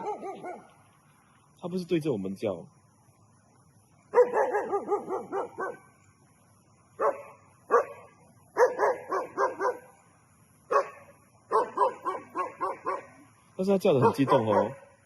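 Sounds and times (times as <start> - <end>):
dog barking excitedly: 0.0 - 0.7, 4.1 - 5.8, 8.6 - 9.9, 10.7 - 13.2, 14.0 - 15.0.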